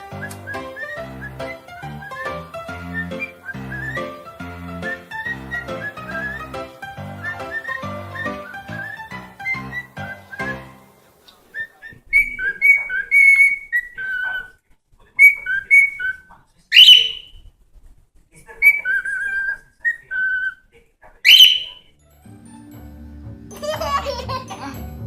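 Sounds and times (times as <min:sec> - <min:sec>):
parrot whistling a tune: 0:00.1 - 0:10.7, 0:16.8 - 0:17.3, 0:21.3 - 0:21.8
parrot shrill rising call: 0:16.8 - 0:17.3, 0:21.3 - 0:21.8.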